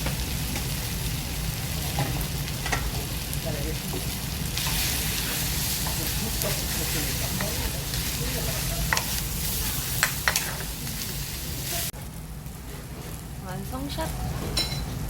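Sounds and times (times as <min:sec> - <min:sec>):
food sizzling in a frying pan: 0:00.0 - 0:15.0
utensil clicking against pan: 0:10.0 - 0:10.7.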